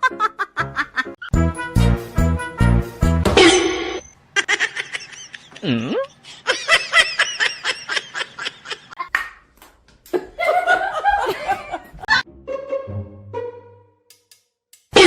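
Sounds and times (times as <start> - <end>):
person laughing: 0.0 - 1.3, 4.4 - 9.2, 10.1 - 12.2.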